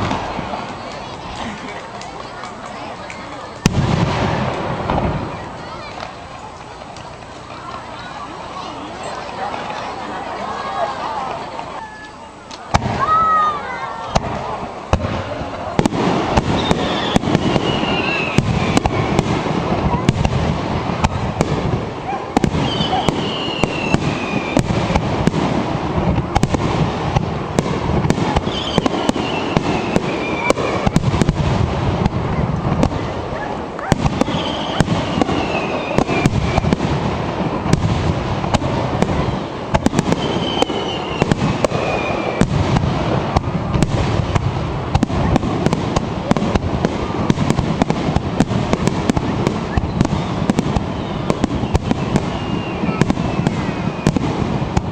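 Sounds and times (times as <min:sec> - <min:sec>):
firework bursts crackling and popping: 0:00.0 - 0:10.0, 0:11.3 - 0:54.9
falling firework whistle: 0:16.4 - 0:19.4, 0:22.4 - 0:24.7, 0:28.3 - 0:31.0, 0:34.0 - 0:36.8, 0:39.0 - 0:42.6, 0:49.4 - 0:54.3.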